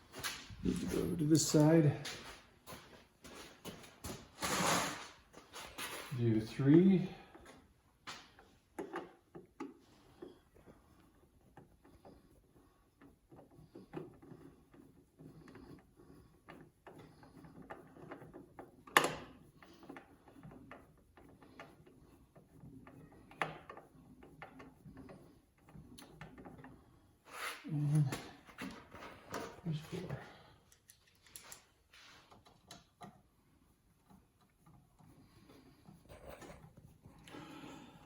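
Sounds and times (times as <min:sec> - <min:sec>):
screwdriver and metal parts clicking: 0:30.7 - 0:31.7.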